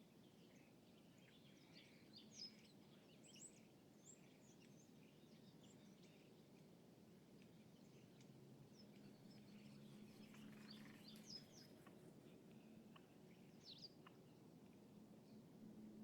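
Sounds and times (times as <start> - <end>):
small birds chirping: 7.8 - 14.3.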